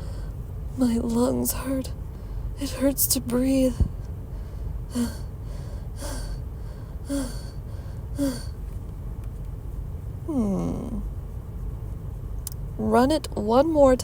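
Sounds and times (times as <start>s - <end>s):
person panting for breath: 4.3s - 8.6s
person groaning: 4.9s - 5.2s, 6.0s - 6.4s, 7.1s - 7.5s, 8.2s - 8.5s, 10.3s - 11.1s.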